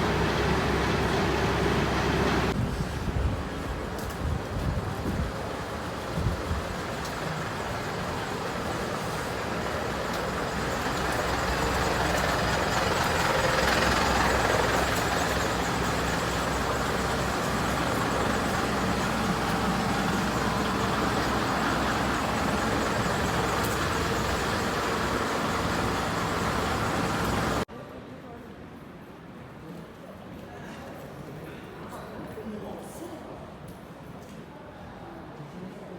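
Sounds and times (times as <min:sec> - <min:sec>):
heavy vehicle engine running: 0:00.0 - 0:27.7.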